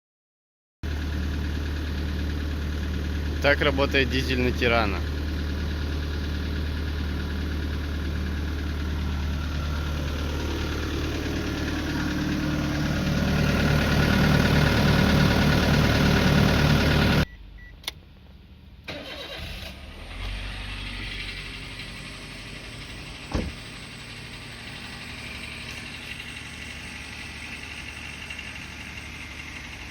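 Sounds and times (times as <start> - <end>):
diesel engine idling: 0.8 - 29.9
click: 17.8 - 18.0.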